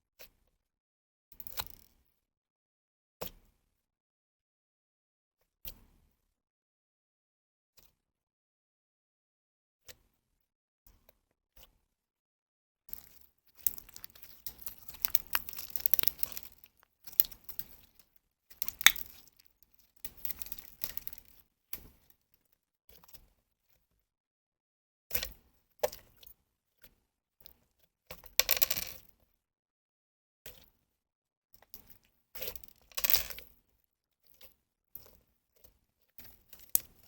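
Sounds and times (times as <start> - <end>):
slime squished by hand: 12.9 - 17.8, 18.6 - 19.4, 20.1 - 21.3.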